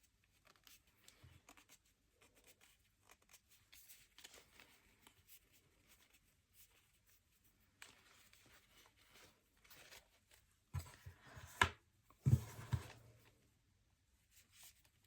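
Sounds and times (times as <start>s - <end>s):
objects knocking on table: 12.3s - 13.0s.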